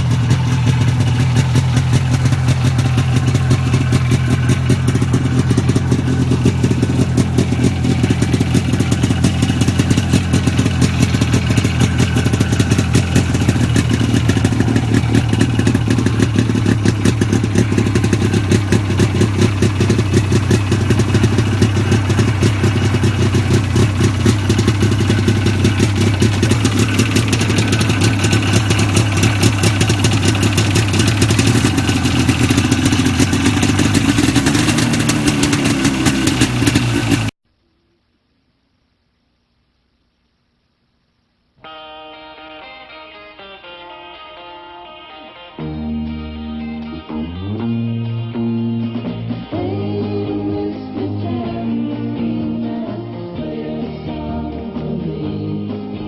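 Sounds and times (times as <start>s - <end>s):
snowmobile engine running: 0.0s - 37.4s.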